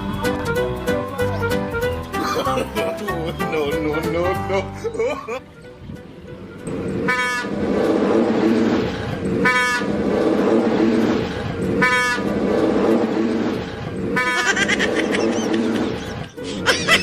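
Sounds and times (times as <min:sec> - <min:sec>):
rushing noise: 0:05.8 - 0:17.0
train horn blaring: 0:06.2 - 0:13.2, 0:14.0 - 0:14.5.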